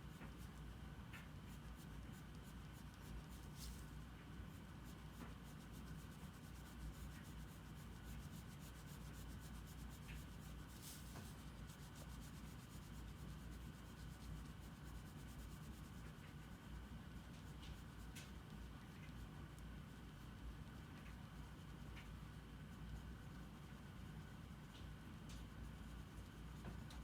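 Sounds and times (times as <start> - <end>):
steady low hum: 0.0 - 27.0
drawing strokes on paper: 1.2 - 16.8.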